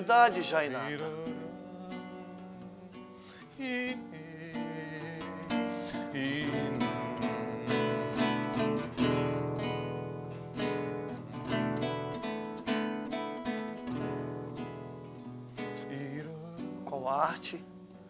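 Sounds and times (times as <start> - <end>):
acoustic guitar chords: 0.0 - 18.0.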